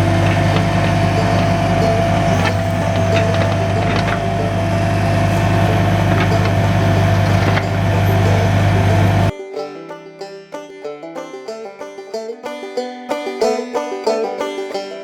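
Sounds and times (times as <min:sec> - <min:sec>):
engine running with high whine: 0:00.0 - 0:09.3
sharp knocks: 0:00.0 - 0:09.3.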